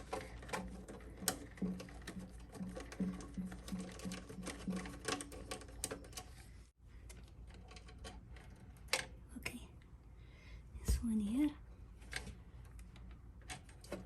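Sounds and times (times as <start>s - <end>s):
tools clicking and tapping: 0.0s - 6.4s.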